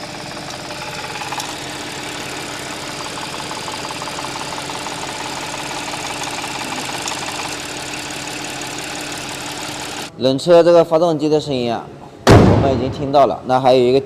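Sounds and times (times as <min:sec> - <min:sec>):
car engine idling: 0:00.0 - 0:10.1
fast engine rattle: 0:00.0 - 0:10.1.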